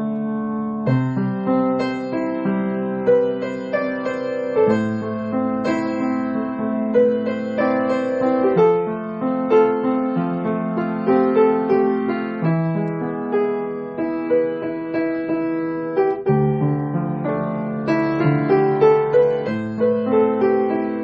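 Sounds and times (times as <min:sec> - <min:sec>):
gentle piano melody: 0:00.0 - 0:21.0.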